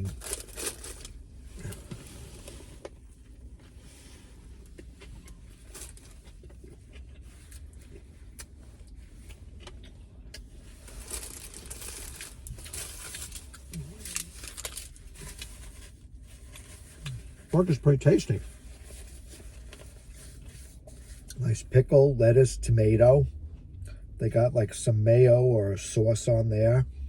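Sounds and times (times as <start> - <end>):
paper wrapper crinkling: 0.0 - 1.2, 10.8 - 17.2
person chewing: 4.7 - 11.4.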